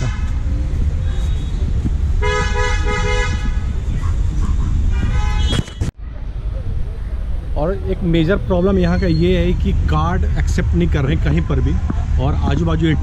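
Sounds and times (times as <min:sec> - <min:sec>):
car horns honking: 0:00.0 - 0:03.7, 0:04.9 - 0:05.9
low rumble of traffic: 0:00.0 - 0:13.0.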